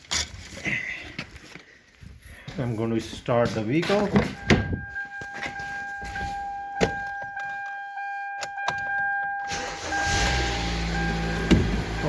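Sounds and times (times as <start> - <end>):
car engine cranking and starting: 8.8 - 12.0.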